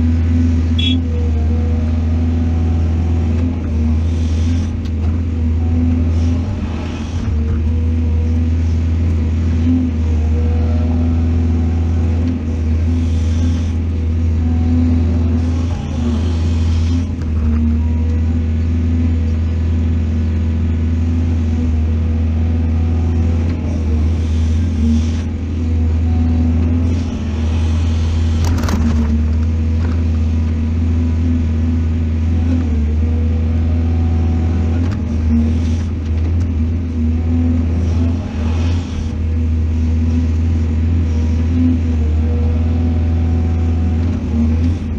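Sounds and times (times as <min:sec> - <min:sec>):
diesel engine droning: 0:00.0 - 0:44.9.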